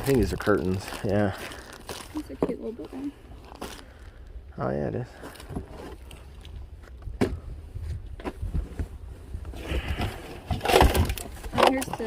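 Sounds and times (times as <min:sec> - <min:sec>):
packaging rustling: 0:00.0 - 0:04.0.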